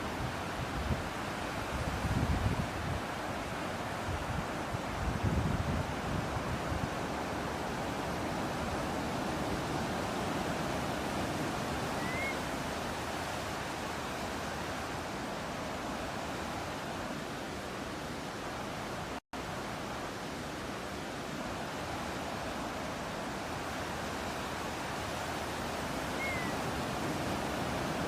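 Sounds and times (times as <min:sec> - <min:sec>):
ocean surf: 0:00.0 - 0:28.0
wind: 0:00.0 - 0:28.0
faint bird chirp: 0:12.0 - 0:12.4, 0:26.1 - 0:26.6.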